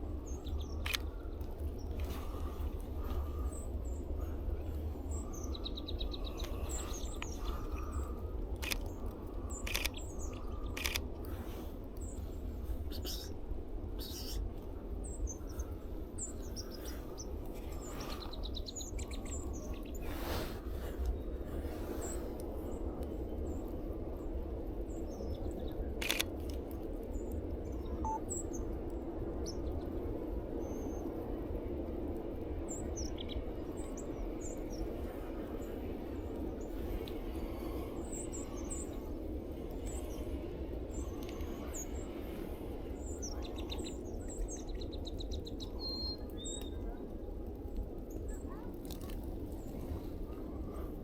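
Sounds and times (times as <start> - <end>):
small birds chirping: 0.0 - 28.7, 32.7 - 47.0
low background rumble: 0.0 - 51.0.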